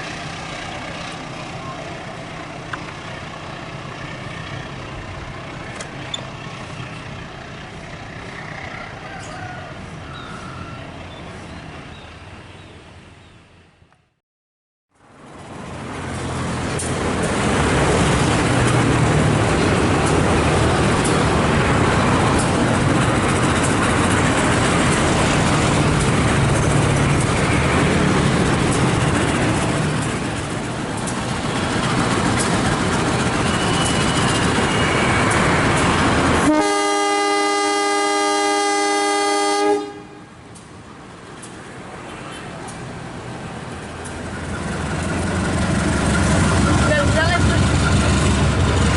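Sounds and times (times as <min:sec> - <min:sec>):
train wheels rumbling on rail: 0:00.0 - 0:13.6, 0:15.0 - 0:48.9
train horn blast: 0:36.4 - 0:40.3.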